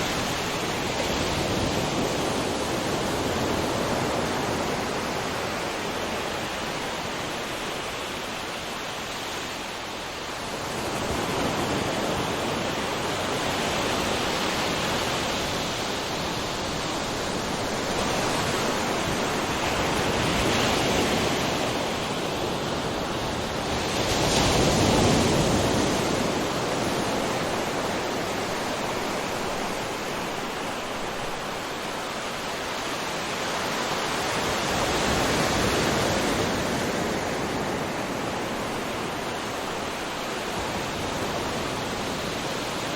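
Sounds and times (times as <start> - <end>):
ocean waves breaking: 0.0 - 42.9.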